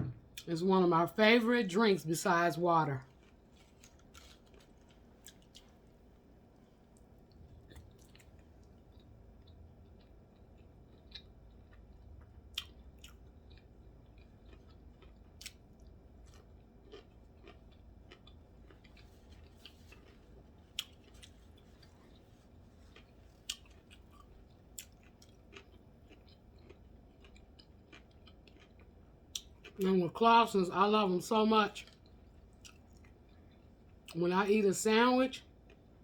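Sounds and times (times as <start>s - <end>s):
chewing and biting food: 3.0s - 6.1s, 6.8s - 29.8s, 31.8s - 34.2s.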